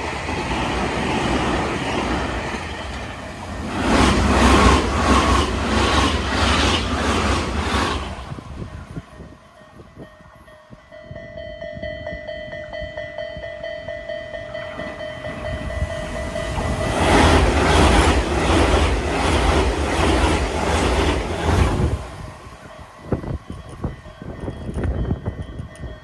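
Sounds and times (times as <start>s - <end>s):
train rumbling past: 0.0s - 26.0s
level crossing warning tone: 11.0s - 18.2s.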